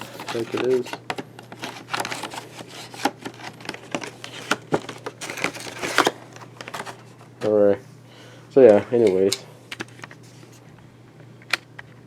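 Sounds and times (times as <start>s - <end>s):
packaging crinkling and rustling: 0.0s - 7.3s.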